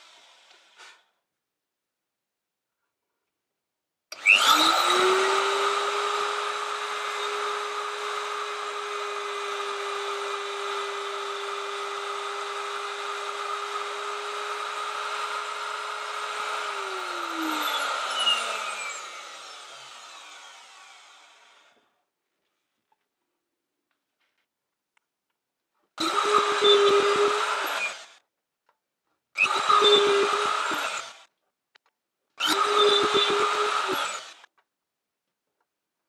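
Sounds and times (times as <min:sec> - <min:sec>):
router winding down whine: 0:04.1 - 0:21.8, 0:26.0 - 0:28.2, 0:29.4 - 0:31.3, 0:32.4 - 0:34.5
router running high pitch: 0:04.2 - 0:21.8, 0:26.0 - 0:28.2, 0:29.4 - 0:31.2, 0:32.4 - 0:34.5.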